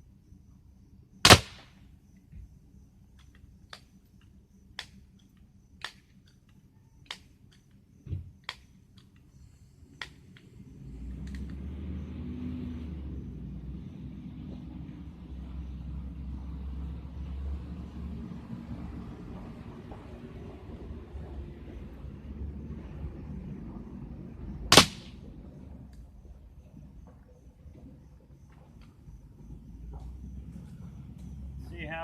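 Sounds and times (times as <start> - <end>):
vehicle rumble: 0.0 - 32.0
air pistol shot crack: 1.3 - 1.8, 24.7 - 25.2.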